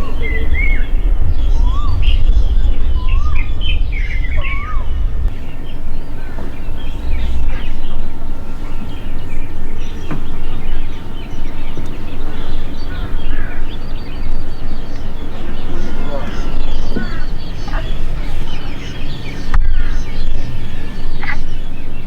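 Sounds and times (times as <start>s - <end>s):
bird whistling rising and falling: 0.0s - 21.3s
high bird chirps: 0.0s - 22.0s
low rumble: 0.0s - 22.0s.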